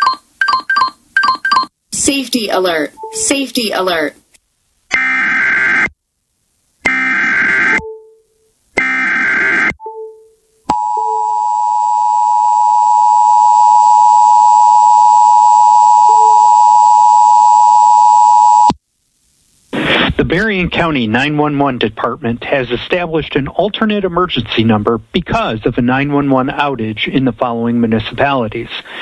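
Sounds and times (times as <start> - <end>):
steady two-tone attention signal: 2.9 - 3.5, 9.8 - 18.7.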